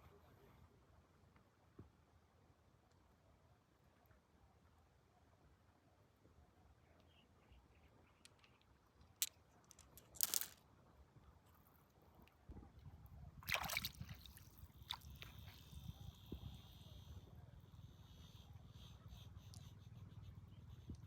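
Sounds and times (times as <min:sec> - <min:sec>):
water sloshing and splashing: 0:13.4 - 0:15.4.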